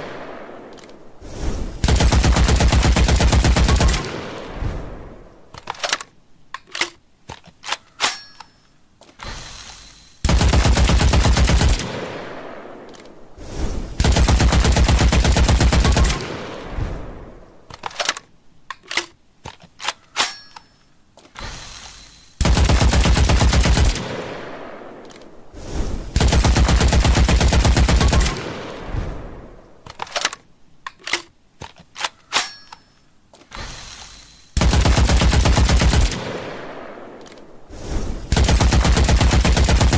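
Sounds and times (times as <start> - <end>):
machine-gun automatic fire: 1.8 - 4.2, 10.2 - 12.1, 14.0 - 16.5, 22.4 - 24.2, 26.2 - 28.8, 34.6 - 36.6, 38.3 - 39.9.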